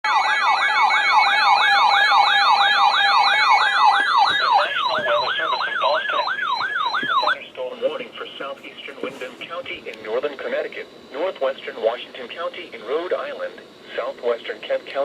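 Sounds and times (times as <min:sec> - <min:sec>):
siren alert tone sweeping: 0:00.1 - 0:07.4.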